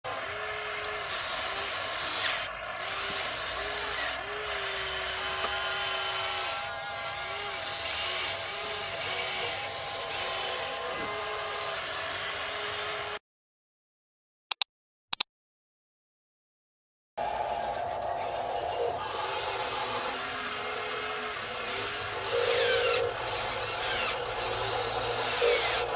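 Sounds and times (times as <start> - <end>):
small electric motors whining: 0.0 - 13.2, 17.2 - 25.9
short clicks: 14.5 - 15.3.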